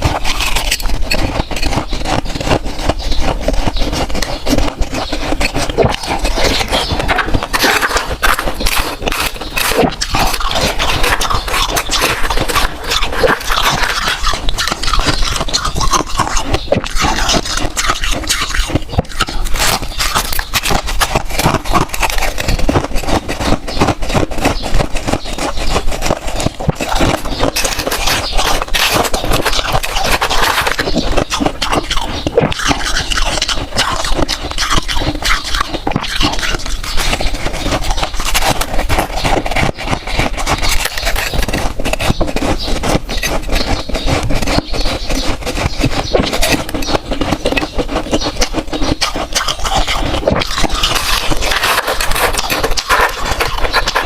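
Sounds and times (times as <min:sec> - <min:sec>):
freezer frost crunching: 0:00.0 - 0:54.0.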